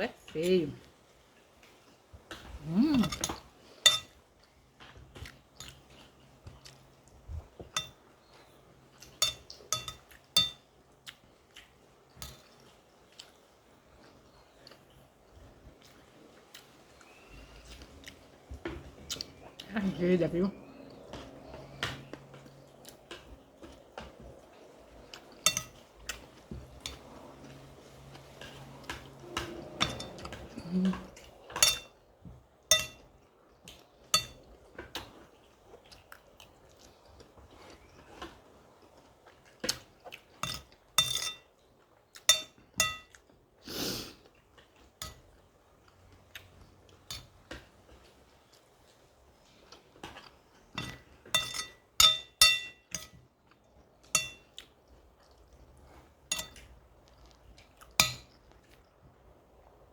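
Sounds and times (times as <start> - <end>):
cutlery clinking on a plate: 3.0 - 4.2, 7.6 - 8.0, 9.0 - 10.7, 25.2 - 27.0, 28.4 - 32.0, 32.7 - 33.1, 34.1 - 35.1, 39.7 - 41.5, 42.2 - 43.2, 45.0 - 45.2, 50.0 - 53.2, 54.0 - 54.5, 56.3 - 56.7, 58.0 - 58.4.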